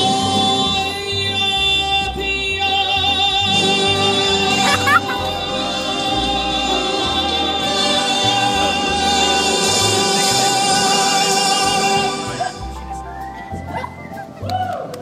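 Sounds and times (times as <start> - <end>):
moving bass line: 0.0 - 14.0
loud music with singing: 3.0 - 12.8.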